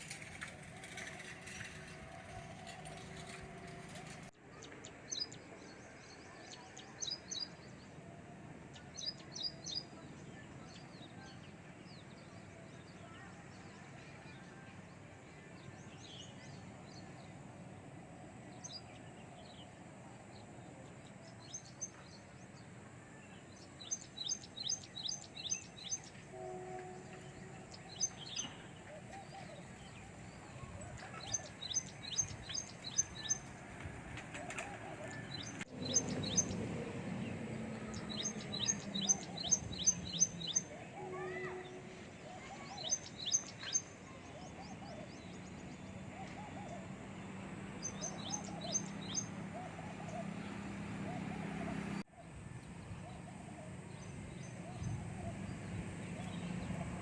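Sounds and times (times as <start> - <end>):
birds chirping: 23.3 - 47.0, 47.8 - 57.0.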